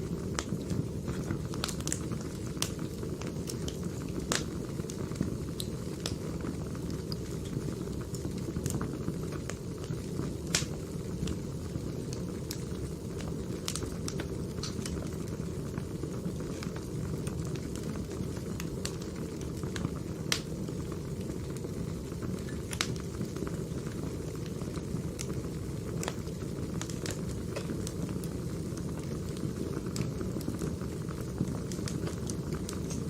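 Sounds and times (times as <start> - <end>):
firewood crackling and popping: 0.0 - 33.0
flames rushing: 0.0 - 33.0.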